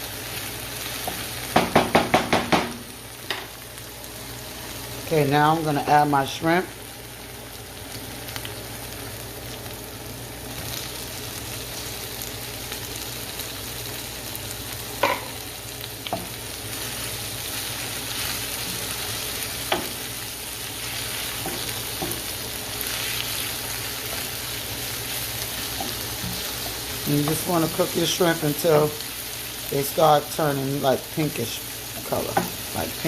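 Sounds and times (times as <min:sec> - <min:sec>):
shrimp sizzling in a pan: 0:00.0 - 0:33.0
utensil knocking against pan: 0:01.5 - 0:02.8.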